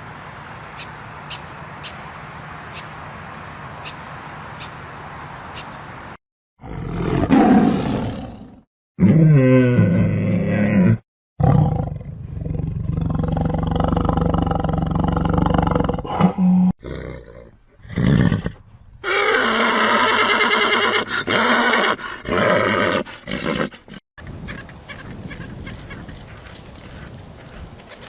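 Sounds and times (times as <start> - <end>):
animal growling: 6.6 - 18.0
roar-like animal call: 6.6 - 23.7.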